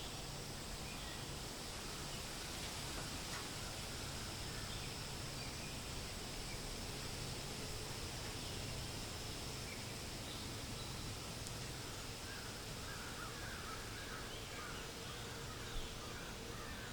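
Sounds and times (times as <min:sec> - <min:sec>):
small birds chirping: 0:00.0 - 0:16.9
wind in leaves: 0:00.0 - 0:16.9.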